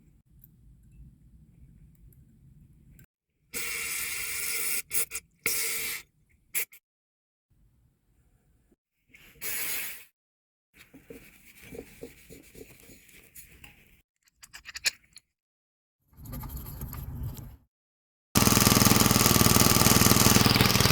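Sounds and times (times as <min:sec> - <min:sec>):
small metal parts scraping and clicking: 0:14.2 - 0:15.2
small engine running: 0:18.4 - 0:20.9.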